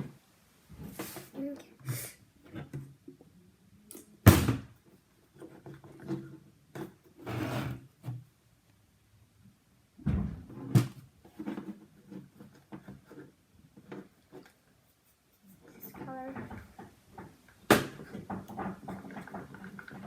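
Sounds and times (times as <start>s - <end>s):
short scrape on a table: 7.2s - 7.8s
objects knocking on a table: 16.0s - 20.0s.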